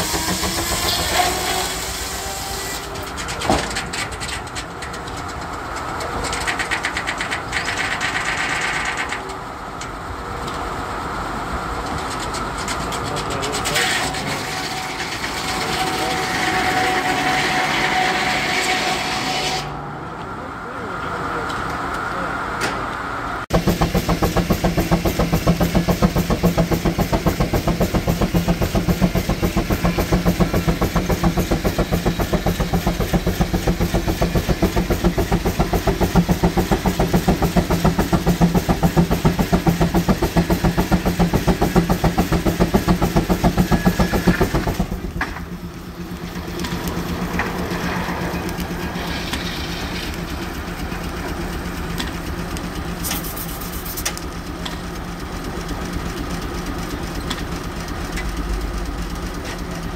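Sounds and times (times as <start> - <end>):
steam engine exhaust beat: 23.5 - 59.9.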